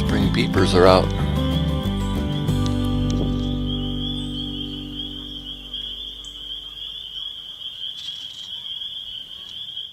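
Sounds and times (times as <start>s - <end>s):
background music: 0.0s - 7.1s
chorus of frogs calling: 3.2s - 9.9s.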